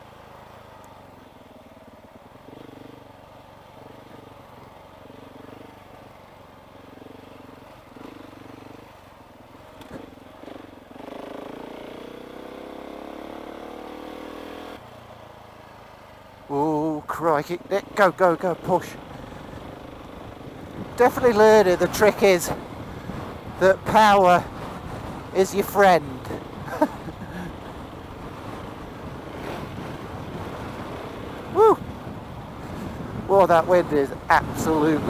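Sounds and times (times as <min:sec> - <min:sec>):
motorcycle engine revving: 0:01.4 - 0:35.0.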